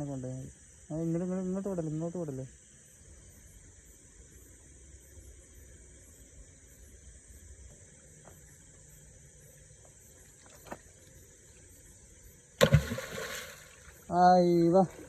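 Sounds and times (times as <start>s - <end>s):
crickets chirping: 0.0s - 15.0s
loud splash in water: 12.6s - 14.1s.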